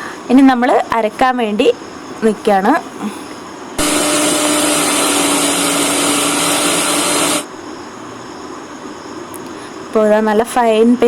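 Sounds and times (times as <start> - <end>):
mixer grinder whirring: 3.8 - 7.5.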